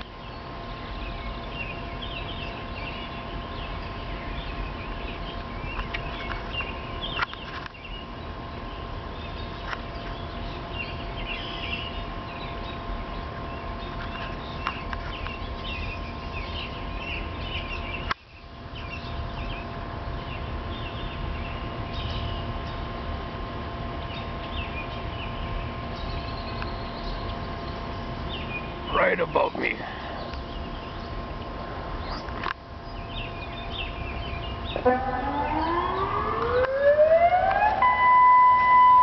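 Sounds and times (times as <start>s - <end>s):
birds chirping: 0.0s - 22.9s, 23.8s - 39.0s
warning siren two-pitch tone: 34.7s - 39.0s.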